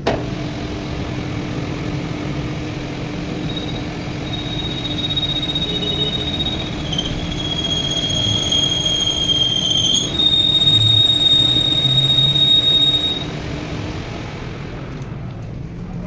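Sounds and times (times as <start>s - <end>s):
machine rumbling: 0.0s - 16.0s
high metal squeal: 1.0s - 13.5s.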